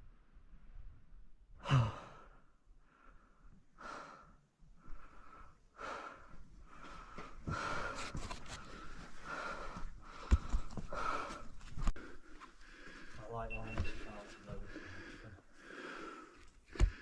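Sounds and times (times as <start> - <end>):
person breathing heavily: 1.6 - 17.0.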